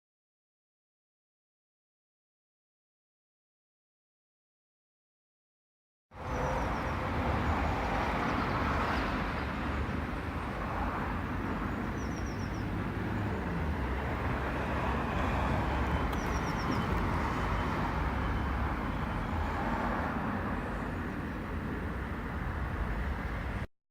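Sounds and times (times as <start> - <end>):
outdoor background rumble: 6.2 - 23.7
high bird chirps: 16.1 - 17.6.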